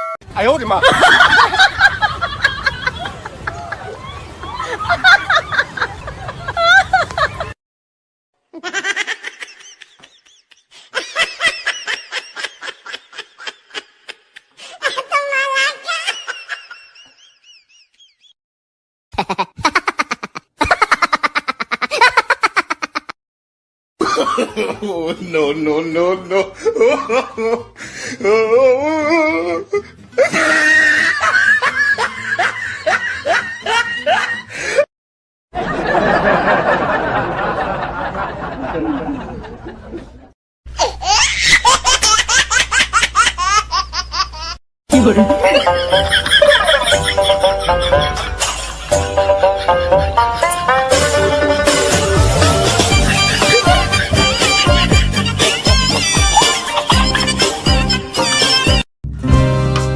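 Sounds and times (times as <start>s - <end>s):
high-pitched laughter: 0.8s - 7.6s, 8.5s - 18.2s, 19.2s - 23.2s, 28.8s - 34.5s, 40.8s - 58.7s
person laughing ha ha: 19.2s - 23.2s, 26.2s - 34.8s, 44.3s - 57.6s.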